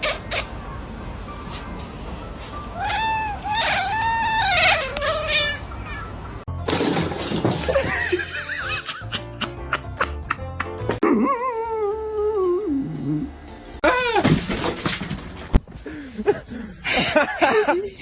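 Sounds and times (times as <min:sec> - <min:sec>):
cat meowing: 0:02.8 - 0:06.2.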